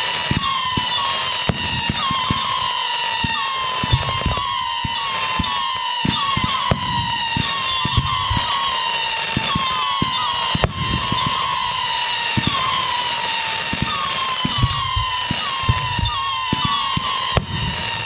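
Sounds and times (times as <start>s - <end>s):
fireworks booming: 0.0s - 18.0s
fireworks cracks: 0.0s - 18.0s
wavering high whistle: 0.0s - 18.0s.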